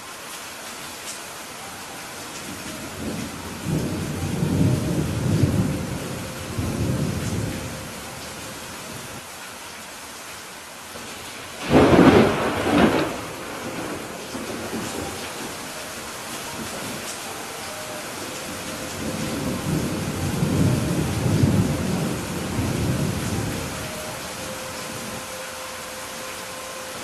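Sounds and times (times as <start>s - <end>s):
steady rain: 0.0s - 27.0s
rolling thunder: 3.0s - 7.9s, 11.6s - 15.8s, 18.3s - 24.1s.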